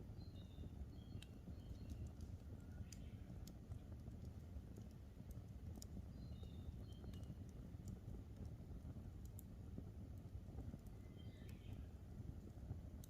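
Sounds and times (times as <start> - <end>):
campfire crackling: 0.0 - 13.0
bird chirping: 0.2 - 2.0, 11.1 - 11.8.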